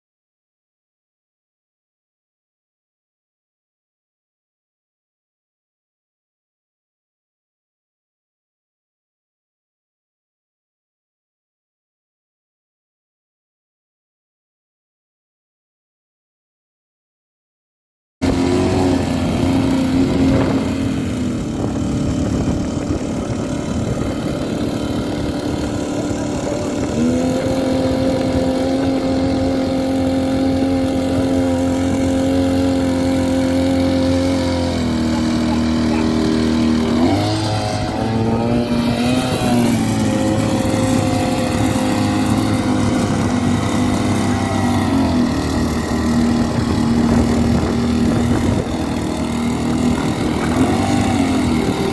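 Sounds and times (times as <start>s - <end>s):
small two-stroke engine running: 18.2s - 51.9s.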